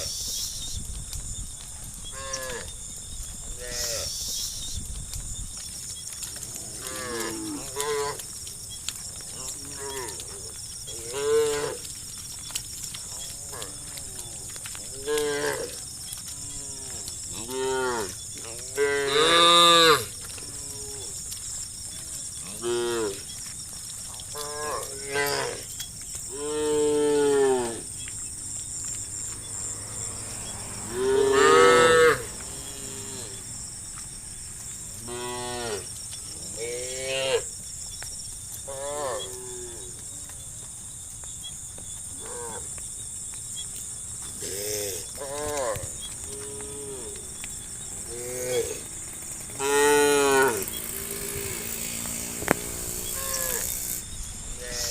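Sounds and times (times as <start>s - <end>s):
cattle mooing: 9.6s - 10.2s, 29.6s - 33.4s, 49.5s - 54.0s.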